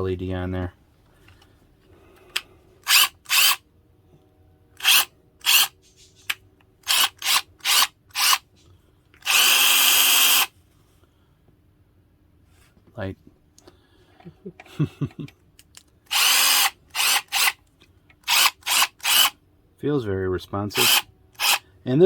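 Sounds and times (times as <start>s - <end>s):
cordless drill spinning: 2.3s - 3.6s, 4.8s - 8.5s, 9.2s - 10.5s, 16.1s - 17.6s, 18.2s - 19.4s, 20.8s - 21.6s.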